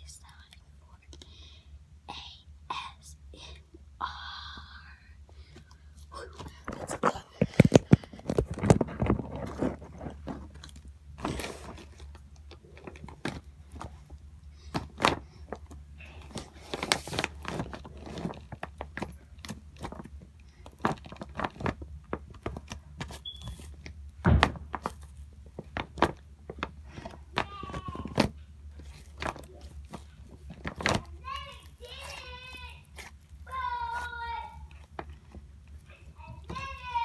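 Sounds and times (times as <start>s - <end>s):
faint low hum: 0.0s - 37.0s
objects being handled: 6.0s - 37.0s.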